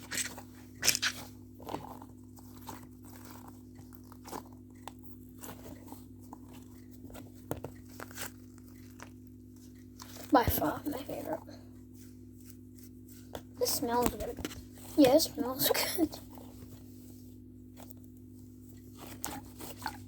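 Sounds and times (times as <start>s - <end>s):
fidget toys squeezed crunching: 0.0s - 1.3s
low electrical hum: 0.0s - 20.0s.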